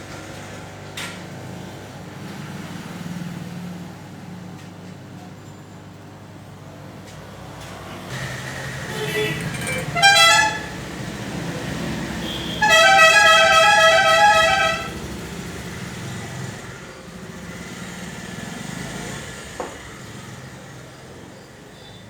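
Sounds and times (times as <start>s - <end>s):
low traffic rumble: 0.0s - 22.0s
vehicle horn honking: 8.7s - 11.0s, 12.2s - 15.2s.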